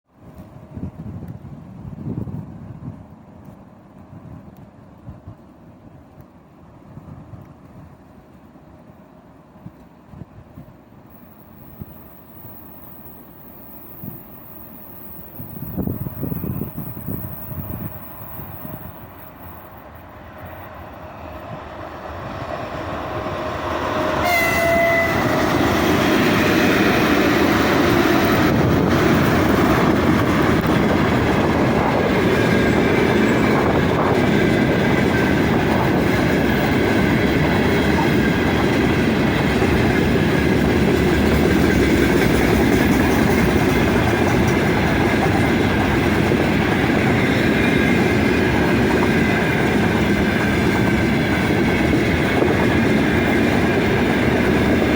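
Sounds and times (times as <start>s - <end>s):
train horn blast: 23.3s - 25.7s
freight wagons rumbling and clacking: 37.4s - 52.1s.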